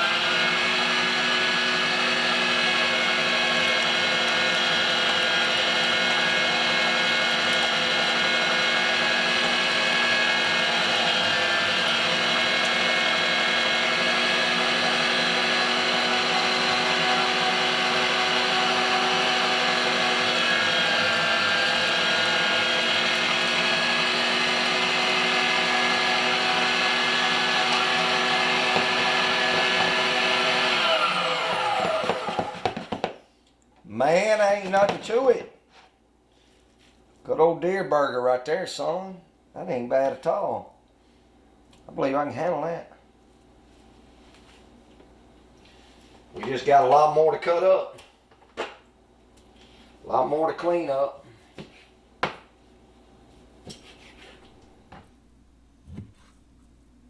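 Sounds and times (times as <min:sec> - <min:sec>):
electric meat grinder running: 0:00.0 - 0:33.1.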